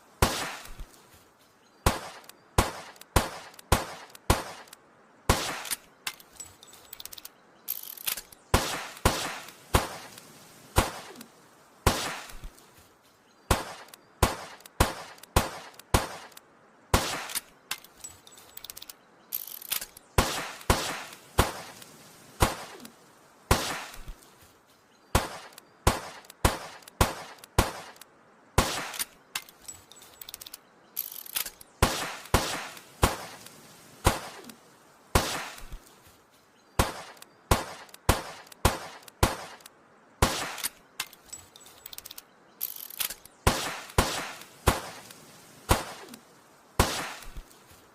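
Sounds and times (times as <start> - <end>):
revolver gunshots: 1.8 - 4.7, 5.3 - 5.8, 8.5 - 10.1, 10.7 - 12.5, 13.5 - 17.5, 23.5 - 24.2, 25.1 - 28.0, 28.6 - 29.1, 31.8 - 33.4, 34.0 - 35.8, 36.8 - 39.6, 40.2 - 40.8, 43.4 - 45.1, 46.8 - 47.4.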